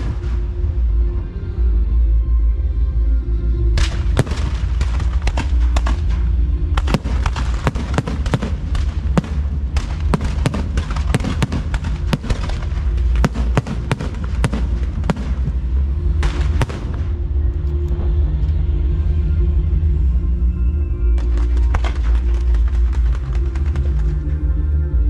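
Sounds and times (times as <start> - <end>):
fireworks bangs and crackles: 0.0 - 0.8, 3.8 - 17.3, 21.2 - 24.4
music with low bass: 0.0 - 25.0.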